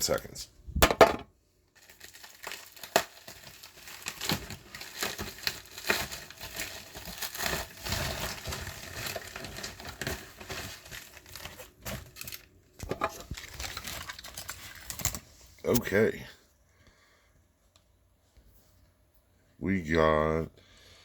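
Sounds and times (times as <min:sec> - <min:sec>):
packaging crinkling and tearing: 0:01.7 - 0:15.3.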